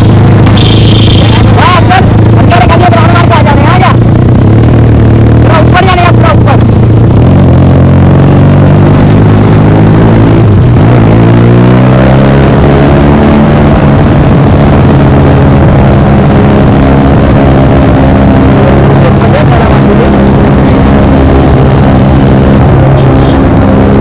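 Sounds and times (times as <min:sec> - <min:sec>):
loud motorcycle engine: 0:00.0 - 0:24.0.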